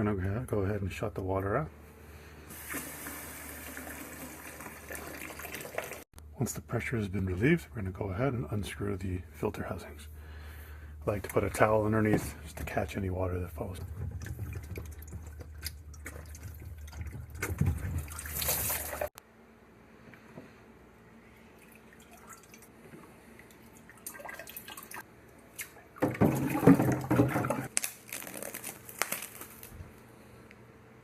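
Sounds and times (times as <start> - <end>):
water dripping and splashing: 13.7 - 19.1, 21.6 - 22.7, 23.4 - 25.0.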